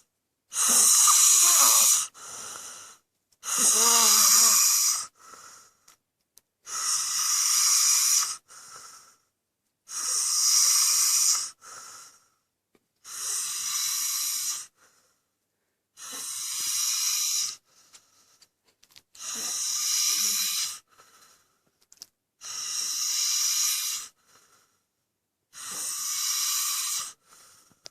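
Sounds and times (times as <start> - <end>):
airy high-pitched snoring: 0.5 - 5.2, 6.7 - 8.5, 9.9 - 11.6, 13.0 - 14.8, 16.0 - 17.6, 19.2 - 20.9, 22.4 - 24.2, 25.5 - 27.2.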